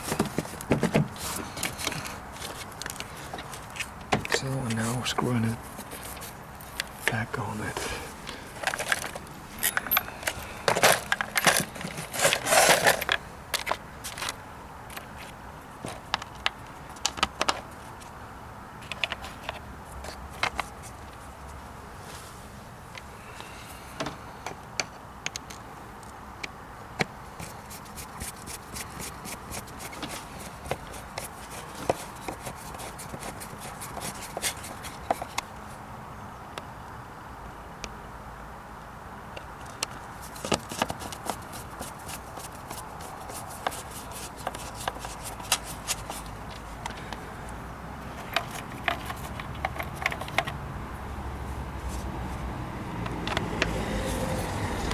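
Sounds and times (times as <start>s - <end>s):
short scraping rustles: 7.8s - 13.2s
hand tools tapping car parts: 8.3s - 14.3s, 27.0s - 35.5s, 48.1s - 50.6s
metal and plastic clicks and knocks: 48.2s - 50.6s, 53.0s - 53.8s.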